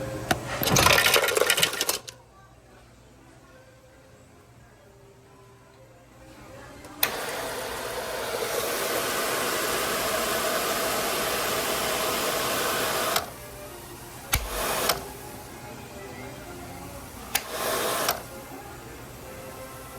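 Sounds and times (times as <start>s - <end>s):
hand dryer blowing: 7.0s - 15.5s, 17.0s - 19.9s
hand dryer switch click: 14.3s - 15.0s, 17.3s - 18.2s.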